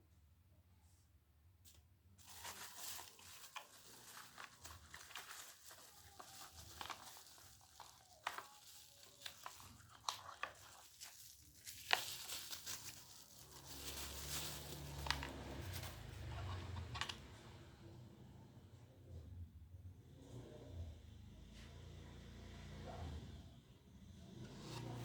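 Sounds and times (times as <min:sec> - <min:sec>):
packaging crinkling and tearing: 0:02.2 - 0:17.2.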